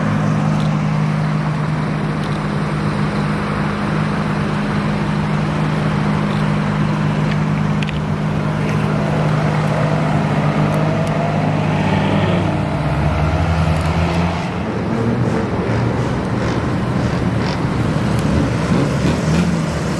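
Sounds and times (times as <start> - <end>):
low engine hum: 0.0 - 19.9
traffic noise: 0.0 - 19.9
car accelerating: 4.8 - 19.9.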